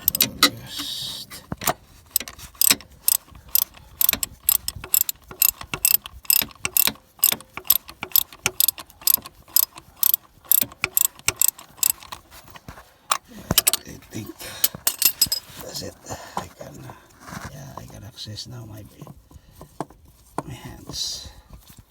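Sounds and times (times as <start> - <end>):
ratchet wrench clicking: 0.0 - 0.5, 1.6 - 12.6, 14.8 - 15.4.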